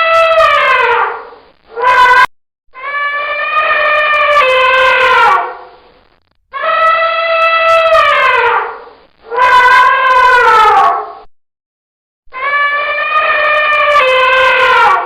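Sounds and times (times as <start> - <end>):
elephant trumpeting: 2.8 - 5.6, 12.4 - 15.0.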